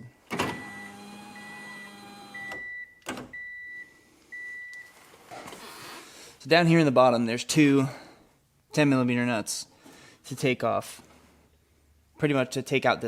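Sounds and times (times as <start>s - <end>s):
window motor click: 0.3s - 2.6s
power window motor running: 0.6s - 2.6s
car warning chime beeping: 0.6s - 4.9s.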